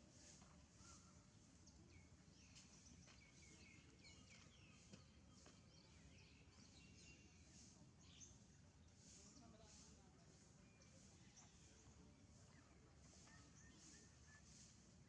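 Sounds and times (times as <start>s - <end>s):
bird chirps: 10.7s - 14.8s.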